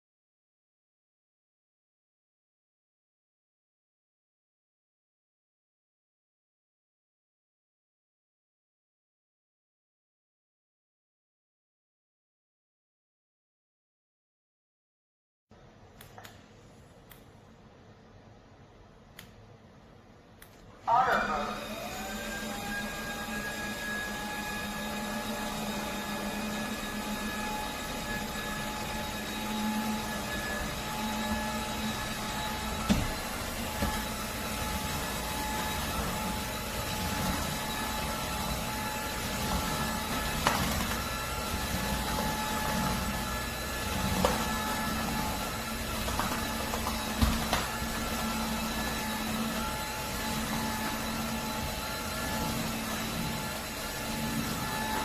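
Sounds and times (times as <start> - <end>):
vacuum mop motor humming: 21.0 - 55.0.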